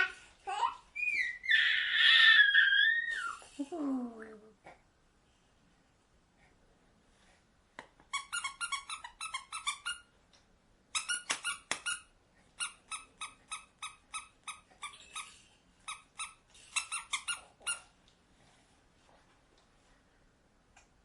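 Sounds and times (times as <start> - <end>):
squeaky rubber toy squeaking: 8.1 - 10.1, 10.9 - 17.9.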